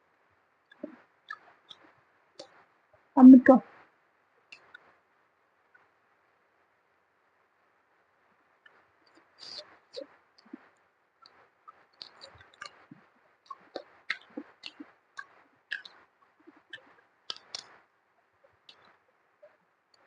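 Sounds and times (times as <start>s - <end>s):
wet mouth clicks: 0.7s - 2.5s, 11.2s - 17.7s
chewing: 0.7s - 2.6s, 8.7s - 17.8s
lip smacks: 11.2s - 17.8s.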